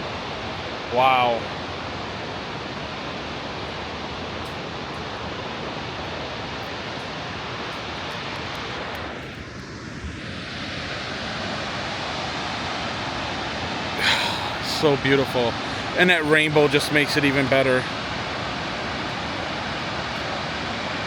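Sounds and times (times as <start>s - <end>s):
waterfall roaring: 0.0s - 21.0s.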